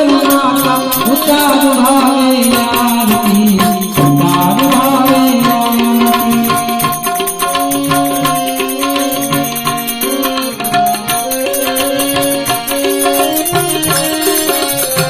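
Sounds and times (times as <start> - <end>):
devotional singing: 0.0 - 7.0
drums and percussion: 0.0 - 15.0
harmonium melody: 0.0 - 15.0.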